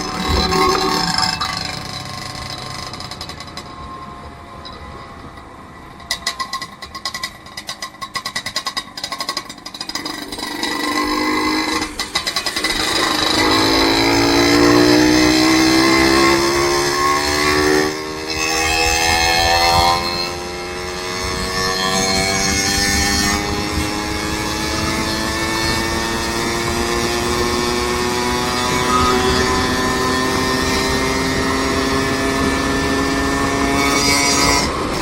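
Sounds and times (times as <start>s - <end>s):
vehicle engine revving: 10.0s - 35.0s.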